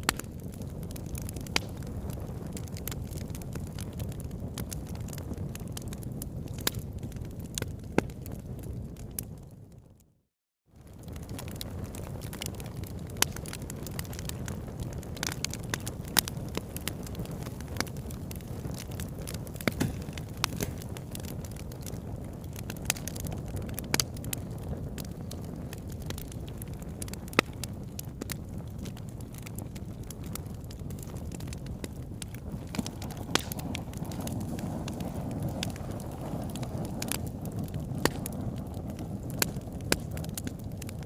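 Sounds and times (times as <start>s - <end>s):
fire crackling and popping: 0.0s - 10.1s, 10.7s - 41.0s.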